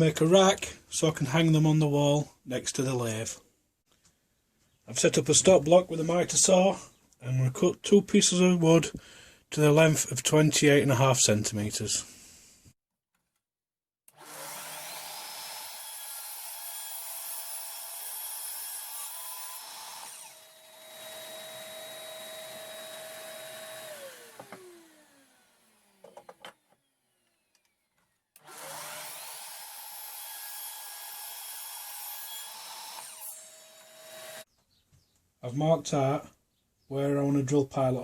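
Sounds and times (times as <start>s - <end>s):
miter saw cutting wood: 14.1s - 34.5s
saw clicks: 25.9s - 28.5s.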